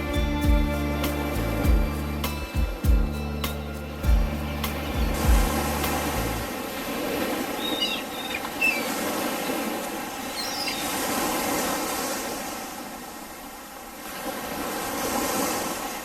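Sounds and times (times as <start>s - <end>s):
sea surf washing: 0.0s - 16.0s
chirping bird calls: 7.3s - 11.6s.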